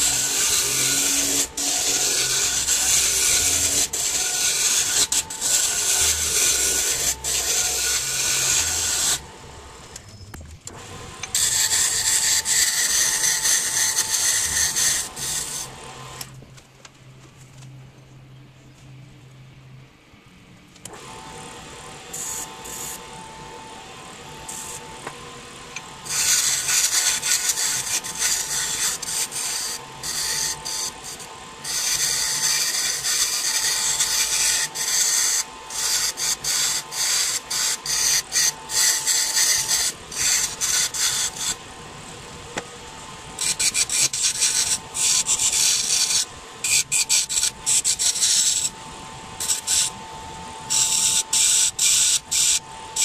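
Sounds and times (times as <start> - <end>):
wood lathe whining: 0.0 - 10.1, 10.7 - 16.4, 20.8 - 53.0
tool scraping spinning wood: 0.0 - 16.2, 24.4 - 41.6, 43.3 - 48.8.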